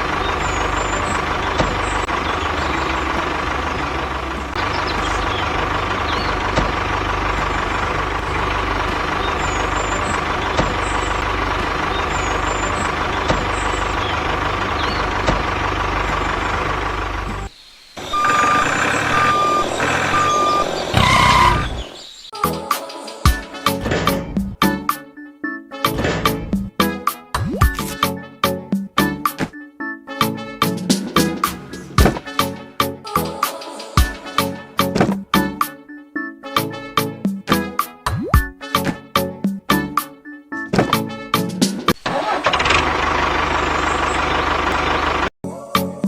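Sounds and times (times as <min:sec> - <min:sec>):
truck engine rumbling: 0:00.0 - 0:22.3, 0:23.6 - 0:24.9, 0:25.9 - 0:27.0, 0:30.2 - 0:33.4, 0:34.4 - 0:35.6, 0:40.7 - 0:45.4
reversing beeps: 0:18.1 - 0:21.8.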